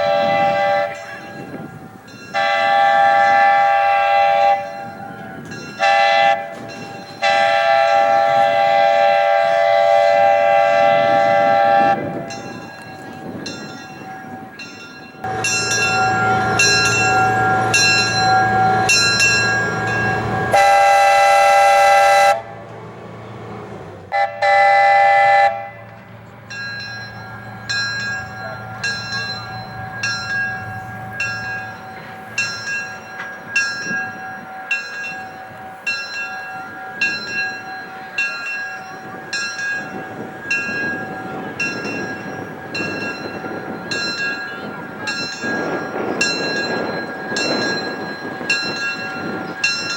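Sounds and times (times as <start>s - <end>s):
steam whistle blasts: 0.0s - 1.4s, 2.4s - 4.9s, 5.8s - 12.2s, 20.2s - 22.5s, 24.1s - 25.8s
locomotive bell ringing: 0.0s - 49.9s.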